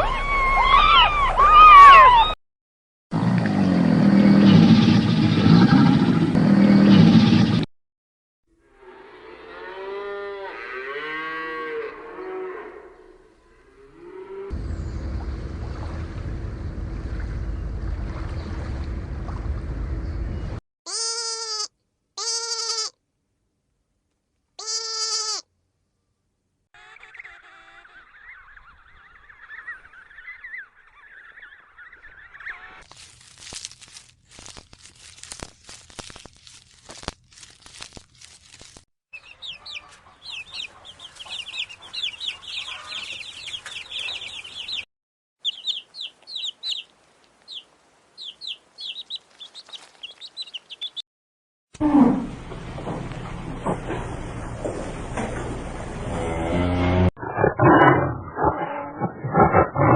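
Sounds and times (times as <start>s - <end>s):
animal bleat: 20.9s - 23.0s, 24.6s - 25.5s
fowl clucking: 39.5s - 44.6s.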